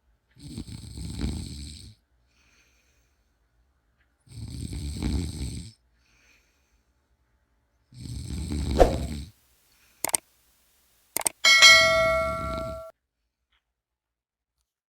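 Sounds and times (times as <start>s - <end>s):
faint breath: 6.0s - 6.9s.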